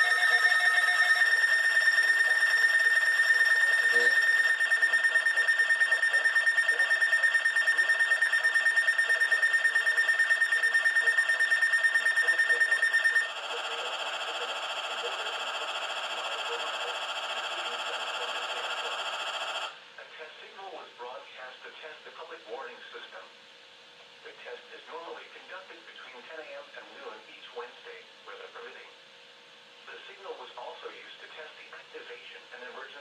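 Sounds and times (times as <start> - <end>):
weather radio alert beeping: 0.0 - 15.5
radio broadcast audio: 0.0 - 23.2.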